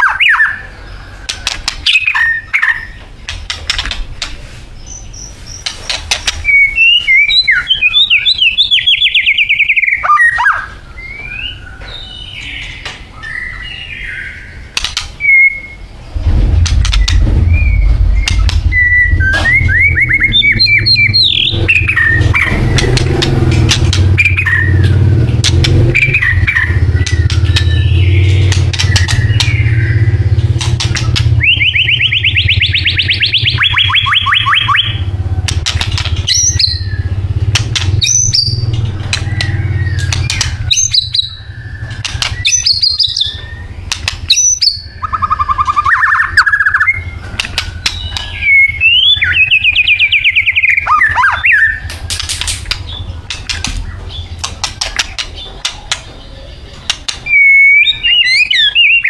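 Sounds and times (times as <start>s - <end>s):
songbird trills and whistles: 0.0s - 3.0s, 4.8s - 15.9s, 16.7s - 23.1s, 24.2s - 24.9s, 25.7s - 37.2s, 38.0s - 59.0s
steady low hum: 14.3s - 58.6s.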